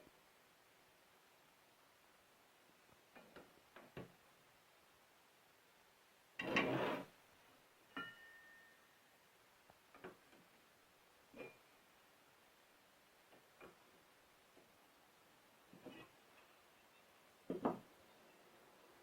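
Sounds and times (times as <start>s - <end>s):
rasping scrape: 6.4s - 7.1s
metal clink ringing: 8.0s - 8.9s.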